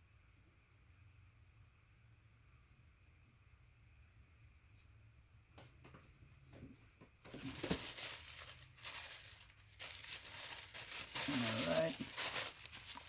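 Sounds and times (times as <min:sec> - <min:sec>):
paper towel crinkling: 0:07.2 - 0:13.0.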